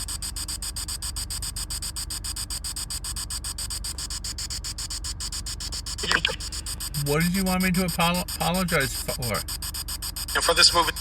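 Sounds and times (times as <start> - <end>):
radio static pulsing rapidly: 5.8 - 11.0.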